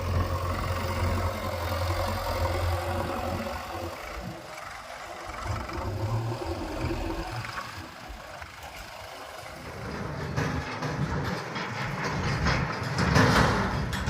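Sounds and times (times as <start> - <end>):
diesel engine of earth-moving machine: 0.0 - 14.0
burst of clatter: 9.6 - 14.0.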